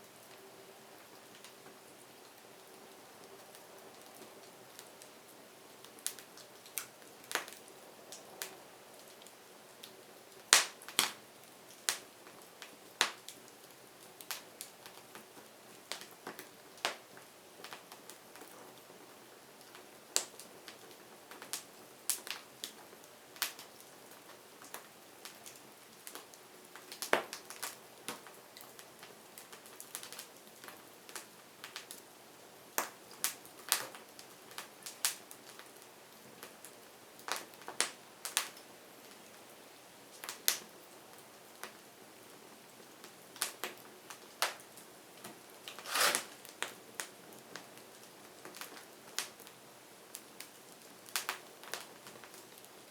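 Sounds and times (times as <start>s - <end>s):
wood fire crackling: 0.1s - 32.0s, 43.0s - 52.9s
faint hiss: 44.1s - 51.4s.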